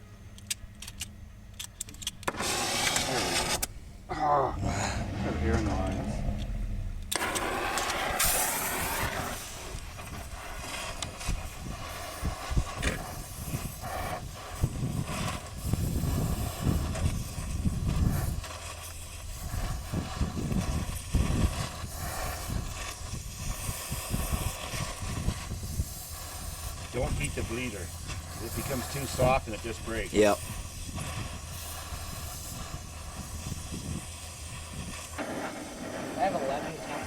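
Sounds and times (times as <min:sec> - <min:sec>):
gas torch hissing: 0:02.0 - 0:37.0
low rumbling and knocks: 0:03.9 - 0:08.4.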